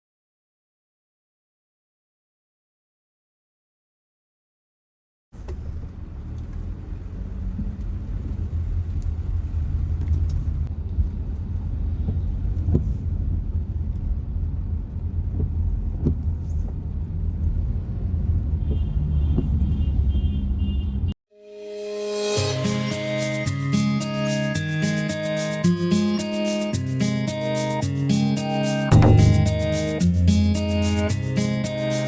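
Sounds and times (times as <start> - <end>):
car driving rumble: 5.4 - 18.7.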